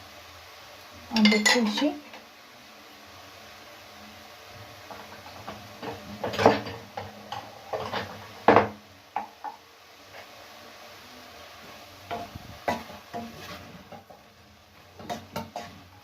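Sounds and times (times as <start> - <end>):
utensils clinking against cooking pot: 1.2 - 2.0, 4.9 - 9.6.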